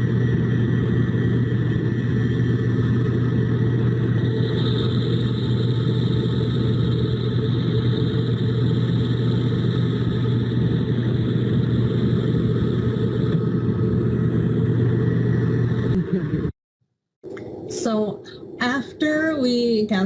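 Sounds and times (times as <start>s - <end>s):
low engine rumble: 0.0s - 16.5s.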